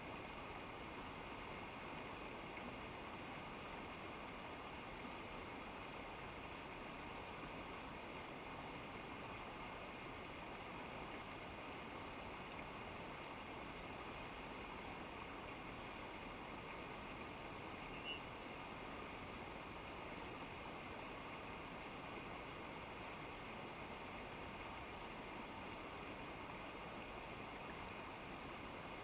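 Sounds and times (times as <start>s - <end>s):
mountain stream rushing: 0.0s - 29.0s
high-pitched chirp: 17.9s - 18.3s.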